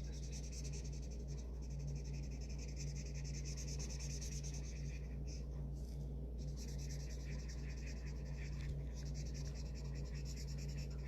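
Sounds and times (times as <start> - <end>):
marker scribbling on paper: 0.0 - 5.5, 6.4 - 11.0
steady low hum: 0.0 - 11.0.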